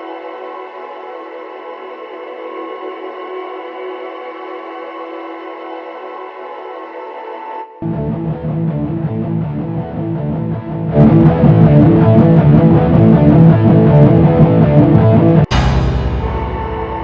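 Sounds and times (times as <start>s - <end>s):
soundtrack music with guitar: 7.8s - 17.0s.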